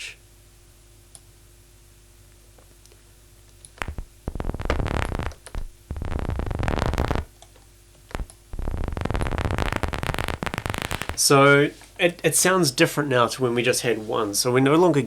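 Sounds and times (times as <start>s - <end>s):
synthesizer rapid clicks: 3.7s - 7.3s, 8.1s - 11.2s.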